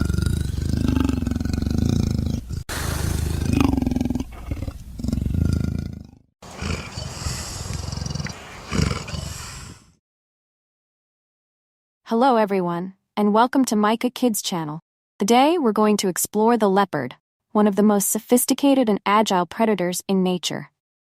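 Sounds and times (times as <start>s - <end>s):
big cat growling and roaring: 0.0s - 9.9s.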